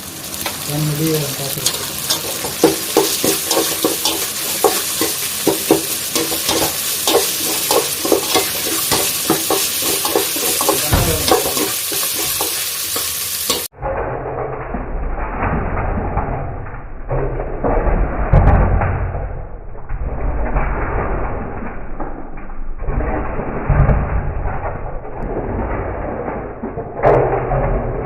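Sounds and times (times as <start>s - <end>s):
food sizzling in hot oil: 0.0s - 13.8s
spoon scraping against pan: 1.4s - 13.7s.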